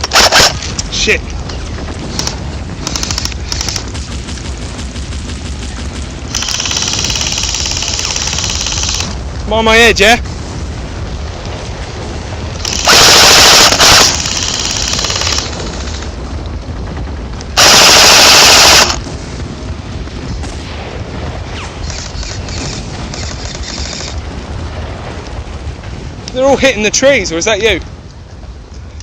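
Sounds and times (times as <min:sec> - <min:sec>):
faint rapid full-auto fire: 0:00.0 - 0:00.7, 0:02.1 - 0:09.3, 0:12.6 - 0:16.1, 0:17.6 - 0:19.2
airsoft rifle full-auto bursts: 0:06.3 - 0:09.2, 0:12.6 - 0:15.6, 0:17.6 - 0:19.0.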